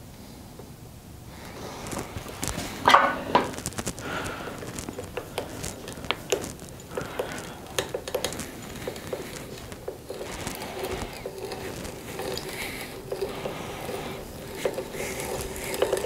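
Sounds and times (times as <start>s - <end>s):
tools and wood clicking: 4.8s - 16.0s.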